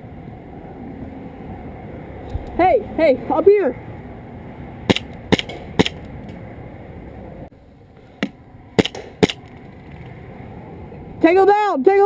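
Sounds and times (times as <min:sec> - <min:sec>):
airsoft gun snaps: 0:08.8 - 0:09.5.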